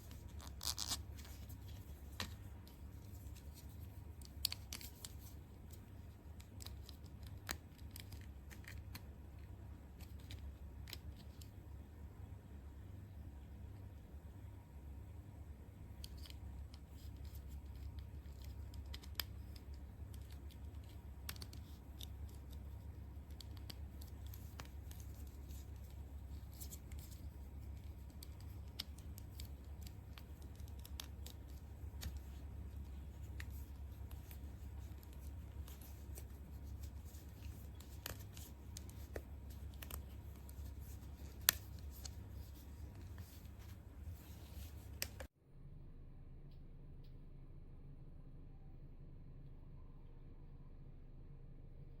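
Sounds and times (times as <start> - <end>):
light clicks and scratchy ticks: 0.0 - 11.6, 15.9 - 45.3
steady low hum: 0.0 - 52.0.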